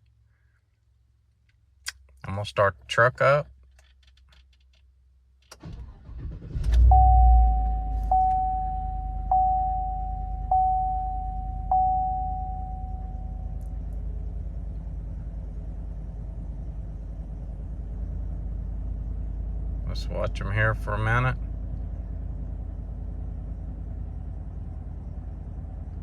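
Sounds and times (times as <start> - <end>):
man talking: 2.2 - 3.4, 19.9 - 21.4
truck engine cranking and idling: 3.6 - 26.0
dashboard warning chime: 6.8 - 13.6.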